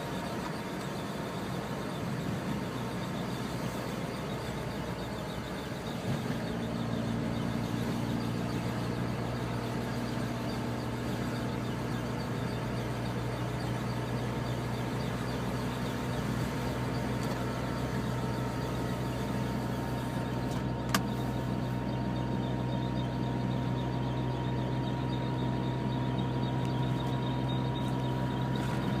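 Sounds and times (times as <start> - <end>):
car engine droning: 0.0 - 29.0
thin steady whine: 0.0 - 29.0
sharp click: 20.5 - 21.2.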